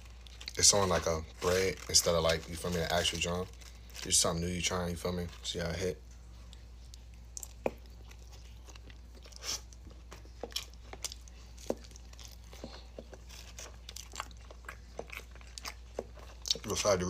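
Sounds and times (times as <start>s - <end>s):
steady low hum: 0.0s - 17.0s
crunchy bites and chewing: 6.4s - 16.8s.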